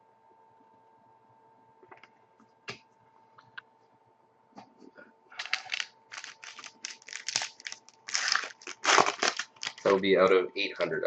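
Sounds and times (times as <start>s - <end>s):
trading cards handled: 5.4s - 9.9s
wrapper crinkling torn open: 5.4s - 10.0s.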